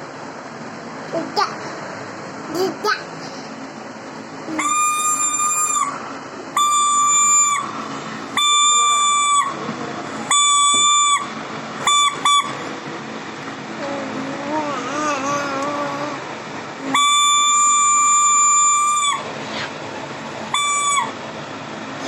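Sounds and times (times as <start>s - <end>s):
child's voice: 1.1s - 1.8s, 2.5s - 3.4s, 13.8s - 16.2s.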